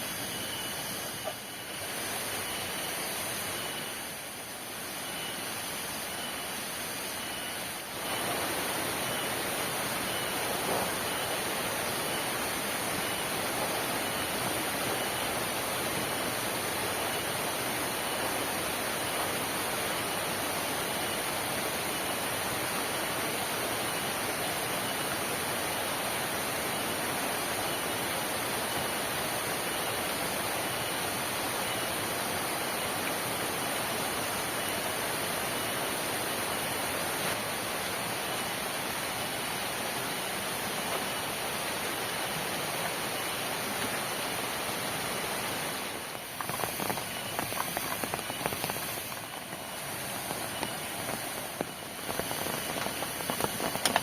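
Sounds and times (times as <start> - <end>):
heavy rain falling: 7.2 - 54.0
crackling sharp clicks: 50.2 - 54.0.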